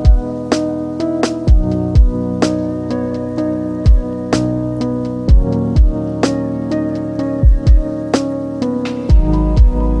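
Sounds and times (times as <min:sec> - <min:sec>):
held chords: 0:00.0 - 0:10.0
low drum thumps: 0:01.5 - 0:02.2, 0:03.9 - 0:04.1, 0:05.3 - 0:06.0, 0:07.4 - 0:07.9, 0:09.1 - 0:09.8.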